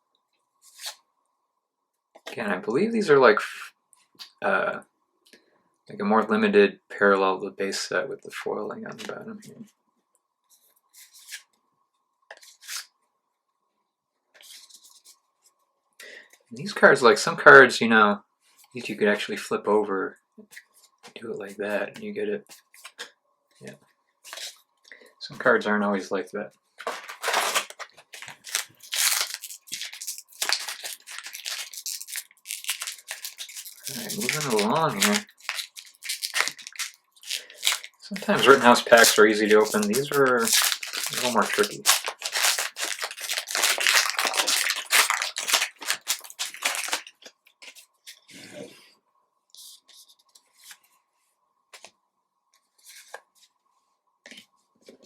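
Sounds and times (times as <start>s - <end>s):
card pack wrapping crinkling: 26.8s - 47.8s.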